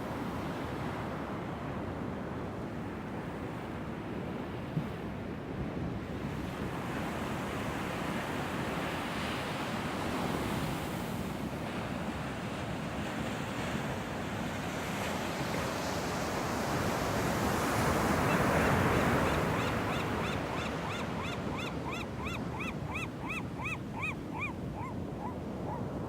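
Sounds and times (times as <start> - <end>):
waves washing on shore: 7.9 - 22.2.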